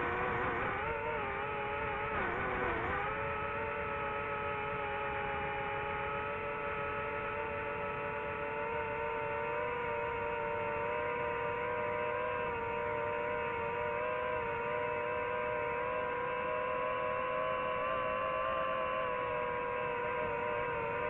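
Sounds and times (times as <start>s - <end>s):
drone propellers whining: 6.4s - 21.0s.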